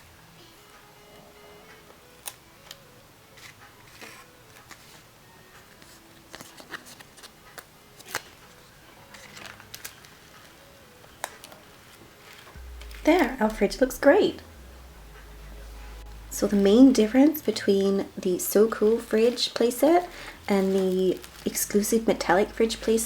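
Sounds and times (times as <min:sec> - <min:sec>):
stickers peeling and pressing: 0:05.6 - 0:13.9, 0:16.4 - 0:23.0.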